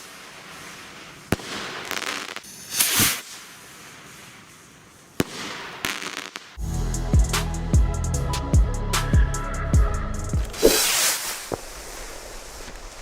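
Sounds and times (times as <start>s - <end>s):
fireworks bangs: 0.0s - 6.6s, 10.4s - 13.0s
fireworks hissing crackling burst: 0.0s - 6.6s, 10.4s - 13.0s.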